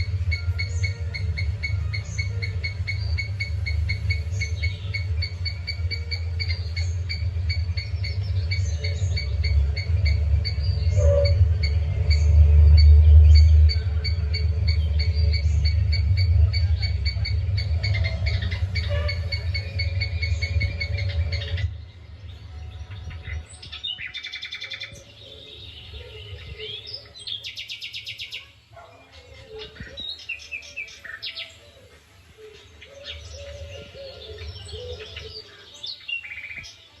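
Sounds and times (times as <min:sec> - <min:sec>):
loud low rumble: 0:00.0 - 0:27.1
birds chirping and calling: 0:00.0 - 0:37.0.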